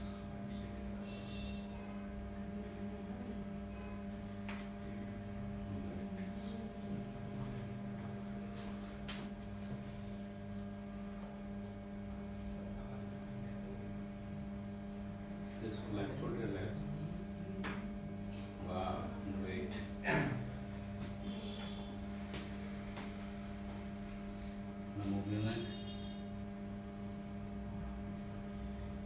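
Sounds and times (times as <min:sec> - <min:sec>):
electrical hum: 0:00.0 - 0:29.0
high whine: 0:00.0 - 0:29.0.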